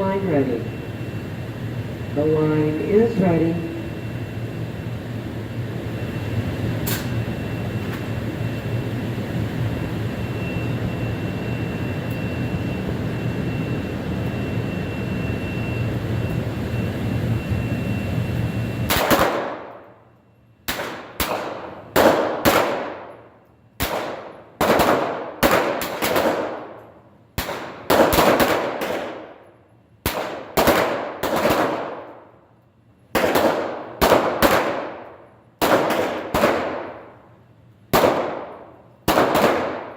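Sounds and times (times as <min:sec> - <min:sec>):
steady background hum: 0:00.0 - 0:39.9
echoing pistol shots: 0:18.9 - 0:19.8, 0:20.7 - 0:23.1, 0:23.8 - 0:26.8, 0:27.4 - 0:29.3, 0:30.0 - 0:32.2, 0:33.1 - 0:37.1, 0:37.9 - 0:39.9.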